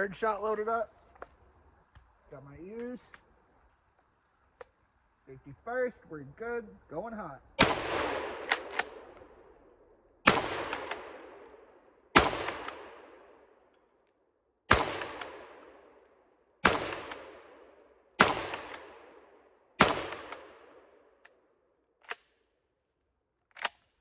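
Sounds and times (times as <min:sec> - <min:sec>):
shotgun shots with echo: 0:07.6 - 0:09.4, 0:10.2 - 0:13.4, 0:14.7 - 0:15.8, 0:16.6 - 0:17.6, 0:18.2 - 0:19.2, 0:19.8 - 0:20.9
shotgun pump clacking: 0:08.4 - 0:09.3, 0:10.6 - 0:11.1, 0:12.4 - 0:12.8, 0:15.0 - 0:15.4, 0:16.8 - 0:17.2, 0:18.2 - 0:18.9, 0:20.0 - 0:20.5, 0:23.5 - 0:23.9.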